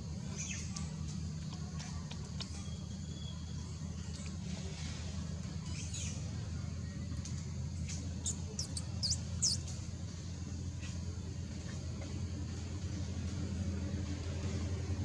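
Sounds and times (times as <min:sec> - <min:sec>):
low background rumble: 0:00.0 - 0:15.0
small animal squeaking: 0:08.2 - 0:09.8.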